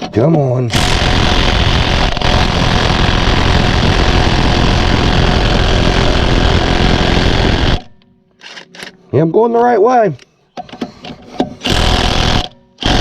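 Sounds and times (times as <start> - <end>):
impact wrench hammering: 11.6 - 13.0.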